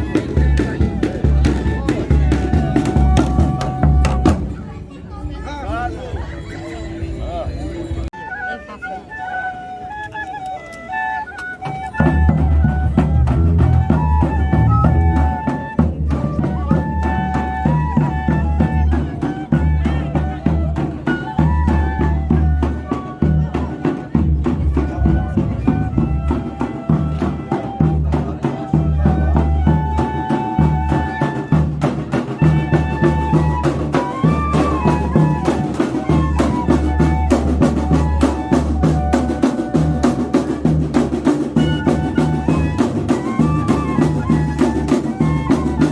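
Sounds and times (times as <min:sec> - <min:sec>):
bass drum and snare beat: 0:00.0 - 0:04.6, 0:12.0 - 0:18.8, 0:23.2 - 0:45.9.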